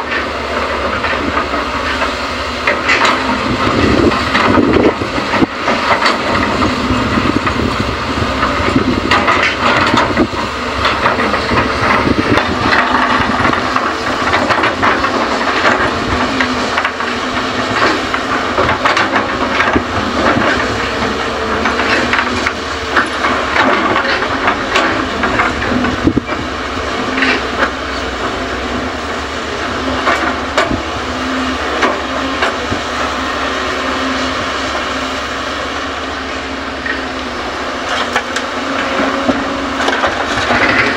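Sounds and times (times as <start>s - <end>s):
heavy machinery engines running: 0.0s - 40.9s
knocks and clatter of earth: 0.0s - 40.9s.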